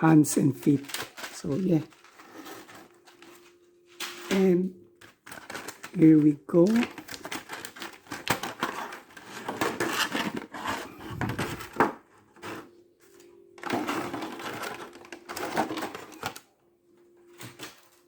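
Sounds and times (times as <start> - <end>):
plastic packaging crinkling: 0.0 - 16.5.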